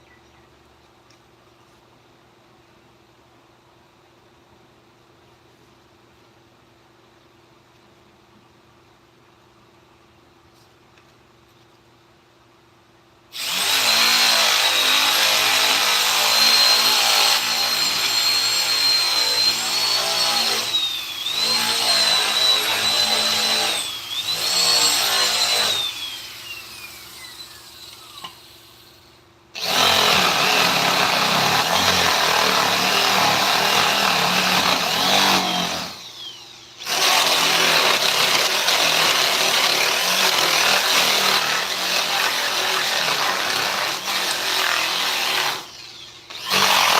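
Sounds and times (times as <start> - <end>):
tool cutting and grinding wood: 13.3 - 29.0, 29.6 - 46.9
electric power tool whining: 29.6 - 46.9.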